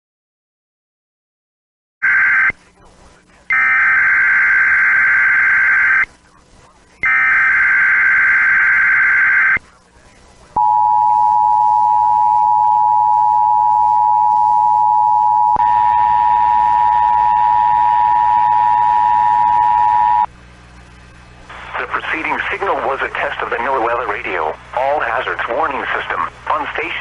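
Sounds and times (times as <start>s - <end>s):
steady warning alarm tone: 3.5s - 6.1s, 7.0s - 9.6s, 10.6s - 20.3s.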